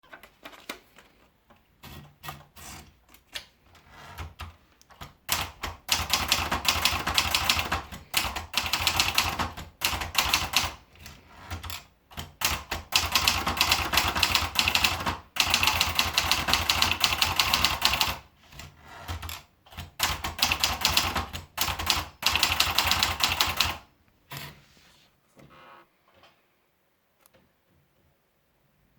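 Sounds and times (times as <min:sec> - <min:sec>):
manual typewriter typing: 0:01.8 - 0:24.5.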